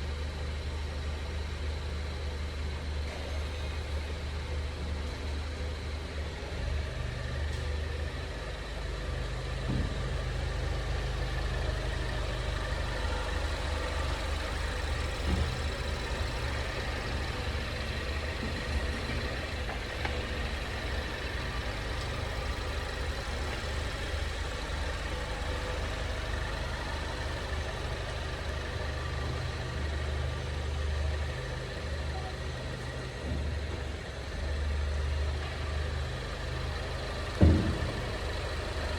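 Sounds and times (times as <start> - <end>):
car road noise: 9.5 - 32.1, 32.7 - 38.9.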